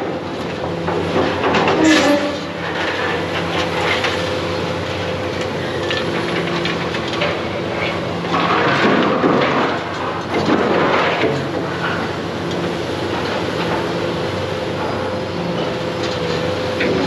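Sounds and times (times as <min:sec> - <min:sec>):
debris clanks and knocks: 0:00.0 - 0:04.2, 0:05.7 - 0:12.2
crunching and scraping: 0:01.0 - 0:04.6, 0:05.4 - 0:12.2.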